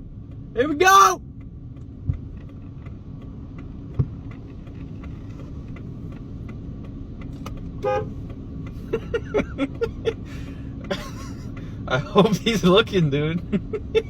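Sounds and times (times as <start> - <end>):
truck engine and road noise: 0.0 - 14.0
car horn toot: 7.8 - 8.2.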